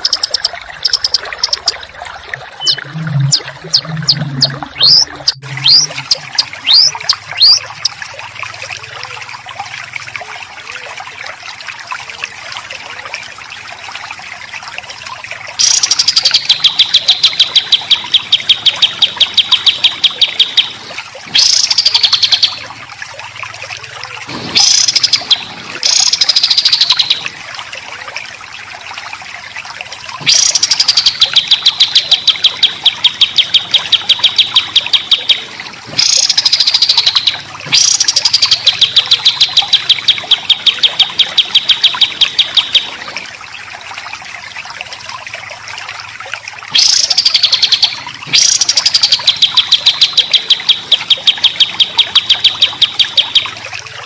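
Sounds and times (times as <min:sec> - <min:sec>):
loud downward-sweeping bird phrases: 0:02.6 - 0:07.6
songbird singing rapid chips: 0:02.6 - 0:08.0, 0:15.6 - 0:22.7, 0:24.4 - 0:27.3, 0:30.2 - 0:43.0, 0:46.7 - 0:53.6.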